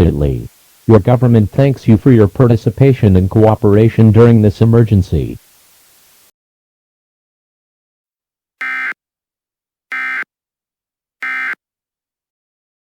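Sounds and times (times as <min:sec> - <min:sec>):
electronic data buzzes: 0:08.6 - 0:09.0, 0:09.9 - 0:10.2, 0:11.2 - 0:11.6.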